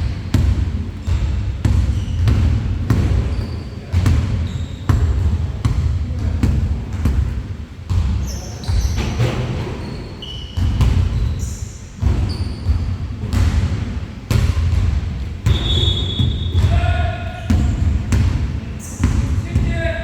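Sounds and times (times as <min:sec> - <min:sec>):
sneakers squeaking: 0:00.0 - 0:07.3, 0:07.9 - 0:20.0
basketball bouncing on hardwood: 0:10.6 - 0:11.3, 0:12.0 - 0:19.9.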